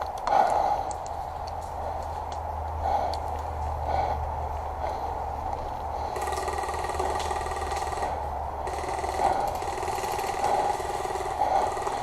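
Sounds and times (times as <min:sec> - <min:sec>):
airsoft gun firing full auto: 0:06.2 - 0:12.0.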